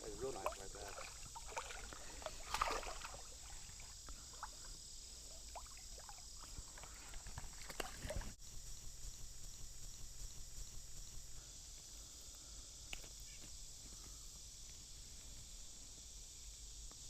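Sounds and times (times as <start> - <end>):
water splashing and lapping: 0.0 - 8.4
steady high hiss: 0.0 - 17.0.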